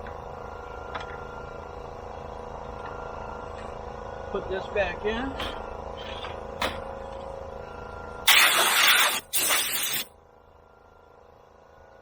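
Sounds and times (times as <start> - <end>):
air blow gun blasts: 8.3 - 10.1
air compressor humming: 8.3 - 10.1.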